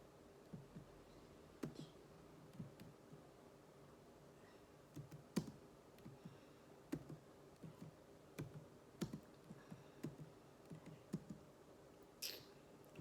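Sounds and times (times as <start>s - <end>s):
keyboard keys typing: 4.9s - 6.2s, 6.9s - 11.4s.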